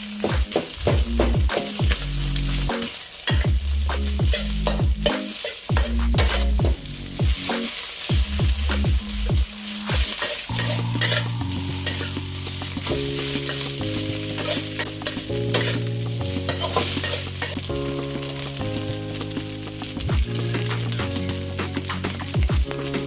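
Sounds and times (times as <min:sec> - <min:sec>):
rice sizzling in a pan: 0:00.0 - 0:23.0
soft background music: 0:00.0 - 0:23.0
spatula scraping and clattering: 0:01.5 - 0:06.8, 0:09.9 - 0:17.7.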